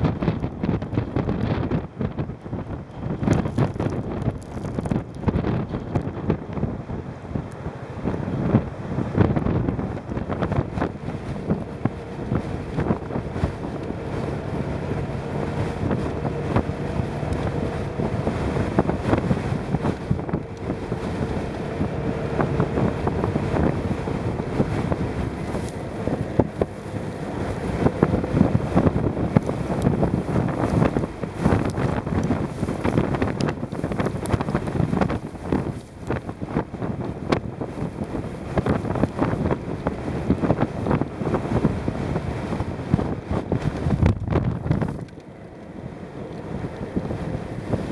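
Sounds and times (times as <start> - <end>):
wind buffeting microphone: 0.0 - 47.9
motorcycle engine running: 8.1 - 41.7.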